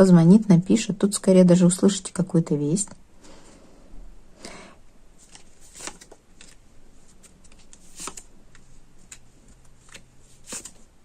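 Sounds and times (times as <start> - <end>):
cards flicking and tapping: 5.2 - 10.9.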